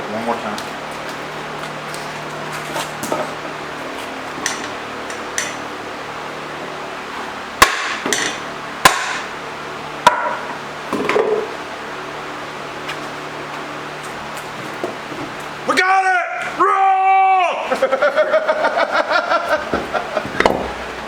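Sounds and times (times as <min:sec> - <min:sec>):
hammer striking metal: 0:04.4 - 0:04.8, 0:07.6 - 0:09.3
small knocks: 0:19.7 - 0:20.9.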